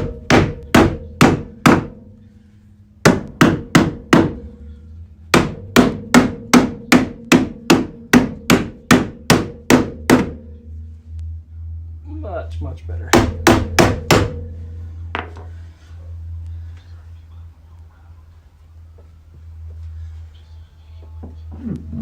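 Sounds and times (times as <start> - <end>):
hammer striking sheet metal: 0.0 - 2.2, 5.3 - 10.6, 13.0 - 15.6
low steady hum: 0.0 - 22.0.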